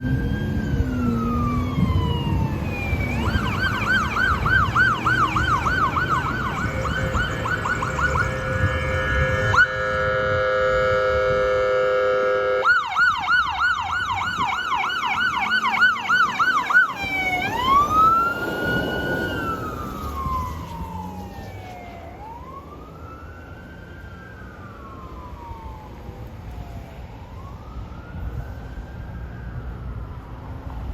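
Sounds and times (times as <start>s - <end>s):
warbling yelp siren: 0.0s - 30.6s
rising and falling siren wail: 0.0s - 30.9s
ambulance air horn blast: 6.6s - 12.8s.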